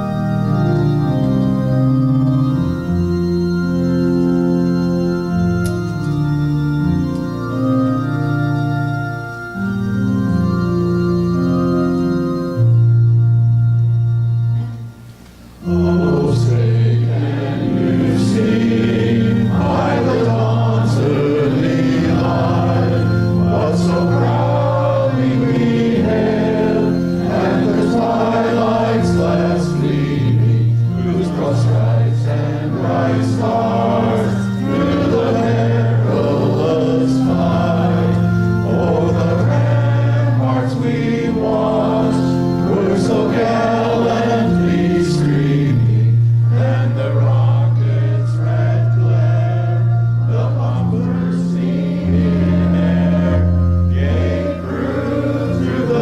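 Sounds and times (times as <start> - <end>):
congregation singing a hymn: 0.0 - 56.0
organ playing: 0.0 - 56.0.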